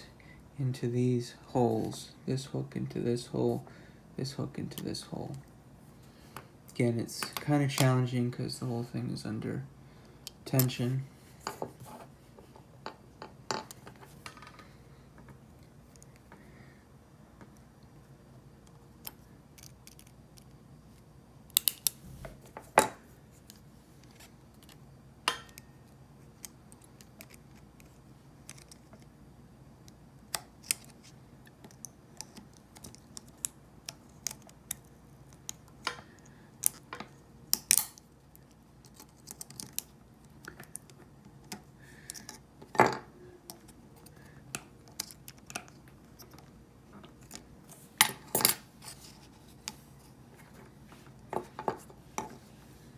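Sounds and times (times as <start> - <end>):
small parts clicking and tapping: 18.6 - 20.6, 21.5 - 22.6, 23.4 - 29.1, 29.8 - 42.9, 43.5 - 48.6
plastic parts snapping: 21.5 - 22.0.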